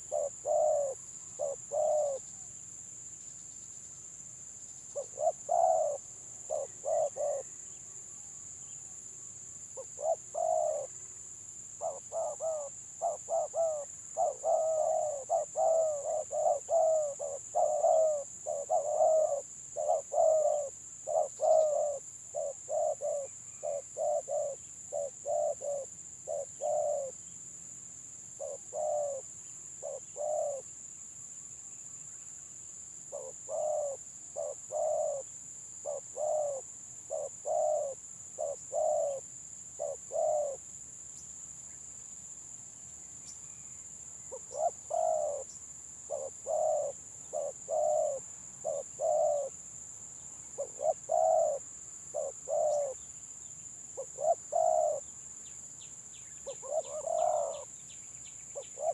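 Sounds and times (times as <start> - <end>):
doves cooing: 0.0 - 2.3, 5.0 - 7.6, 9.8 - 11.0, 11.8 - 27.1, 28.4 - 30.6, 33.1 - 39.2, 39.8 - 40.6, 44.3 - 45.5, 46.1 - 49.5, 50.6 - 53.0, 54.0 - 55.1, 56.4 - 57.7, 58.6 - 58.9.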